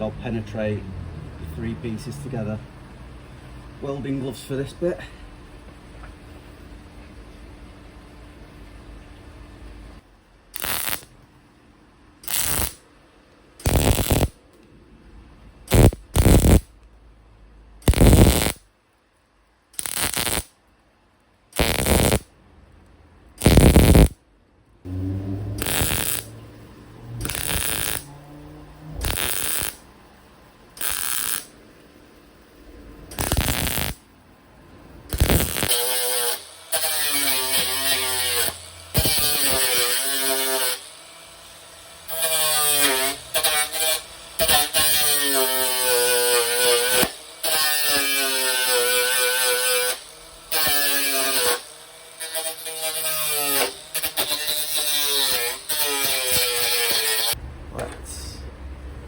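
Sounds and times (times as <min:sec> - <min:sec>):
welder crackling: 0:10.6 - 0:11.2, 0:12.2 - 0:12.8, 0:13.6 - 0:14.4, 0:15.7 - 0:16.7, 0:17.8 - 0:18.6, 0:19.8 - 0:20.6, 0:21.6 - 0:22.3, 0:23.4 - 0:24.2, 0:25.4 - 0:28.3, 0:29.0 - 0:29.9, 0:30.8 - 0:31.6, 0:33.1 - 0:34.0, 0:35.1 - 0:41.0, 0:42.1 - 0:57.4.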